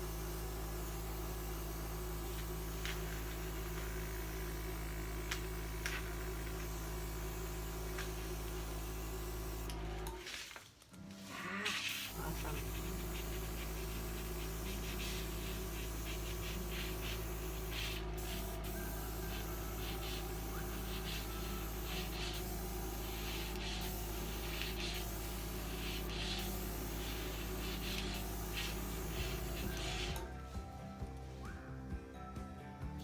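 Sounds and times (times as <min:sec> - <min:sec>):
short air hisses: 0:11.7 - 0:30.2.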